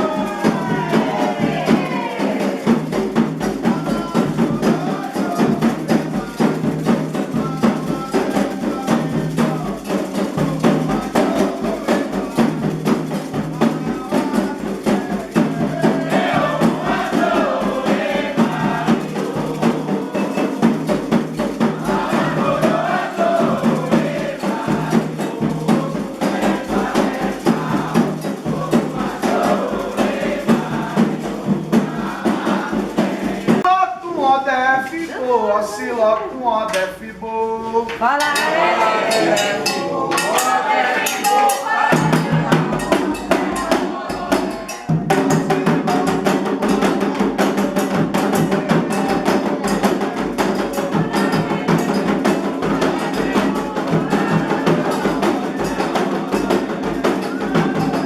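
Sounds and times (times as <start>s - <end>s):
clacking percussion: 0.0s - 33.7s, 37.9s - 58.0s
hand drums: 0.0s - 33.7s, 38.0s - 58.0s
people chanting: 0.0s - 58.0s.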